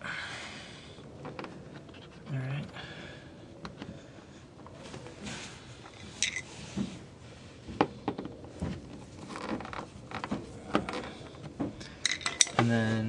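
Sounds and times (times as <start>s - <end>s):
hands handling plastic parts: 5.8s - 6.6s, 7.7s - 12.7s.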